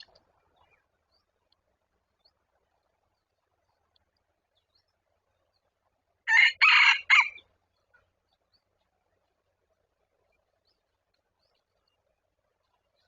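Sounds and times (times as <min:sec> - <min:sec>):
rooster crowing: 0:06.3 - 0:07.4.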